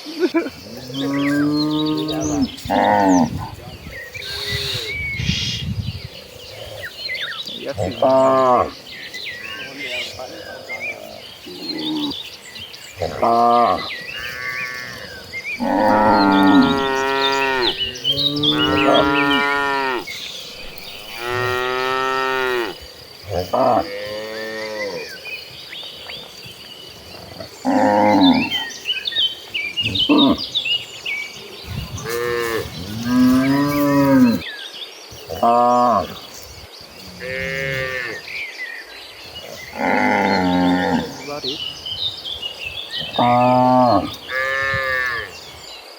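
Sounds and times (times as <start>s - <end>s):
cattle mooing: 13.0s - 20.1s, 21.0s - 25.2s, 27.2s - 28.6s, 32.0s - 34.4s, 39.6s - 41.2s, 43.0s - 45.3s.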